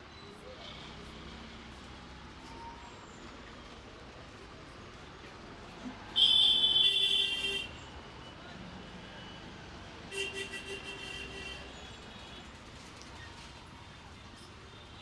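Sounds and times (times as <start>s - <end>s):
vehicle horn long blast: 6.2s - 7.7s.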